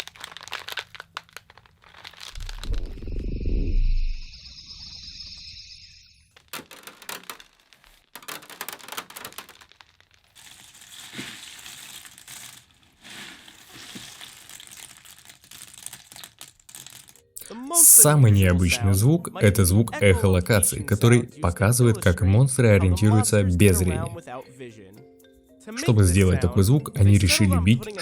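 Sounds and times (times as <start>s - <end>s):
crackling and crumpling: 0.0s - 4.4s, 6.2s - 18.2s
low rumble: 2.4s - 6.1s.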